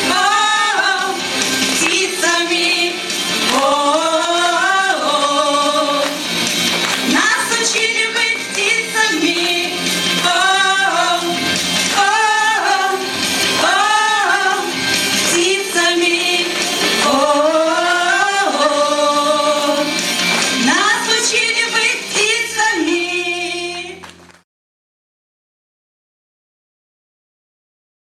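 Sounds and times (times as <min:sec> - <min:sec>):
instrumental accompaniment: 0:00.0 - 0:24.4
woman singing slow song: 0:15.3 - 0:19.9, 0:20.6 - 0:24.0.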